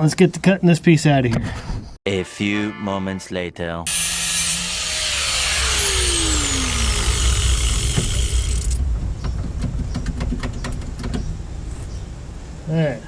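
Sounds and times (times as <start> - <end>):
power tool cutting metal: 3.9 - 8.8.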